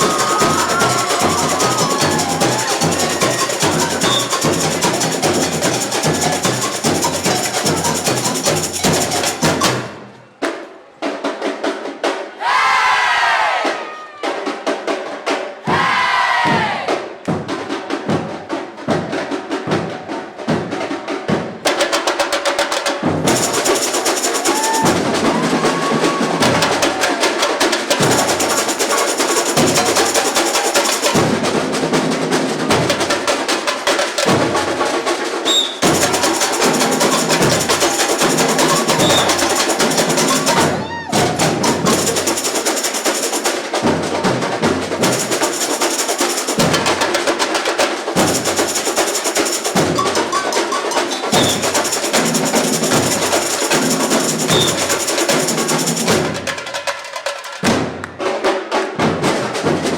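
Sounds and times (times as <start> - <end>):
high metallic percussion: 0.0 - 10.2, 21.7 - 58.1
samba drums: 0.0 - 59.9.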